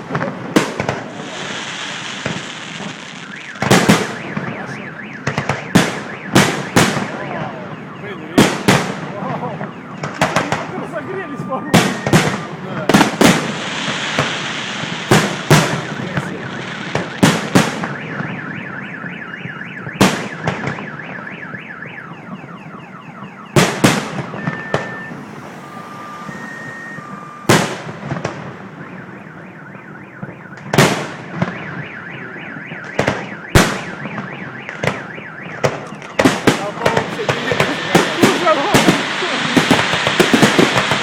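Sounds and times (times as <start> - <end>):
car alarm wailing: 0.0 - 41.0
fireworks bangs: 0.0 - 41.0
short beeps: 21.0 - 27.8.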